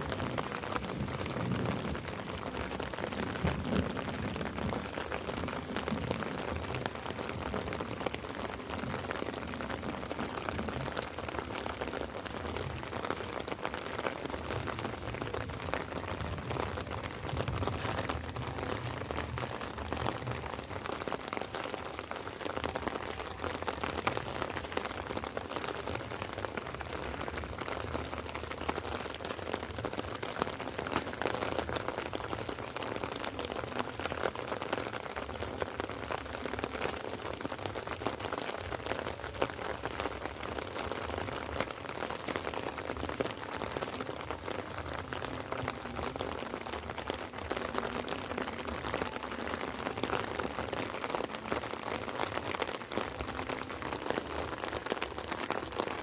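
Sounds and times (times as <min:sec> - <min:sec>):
light rain falling: 0:00.0 - 0:56.0.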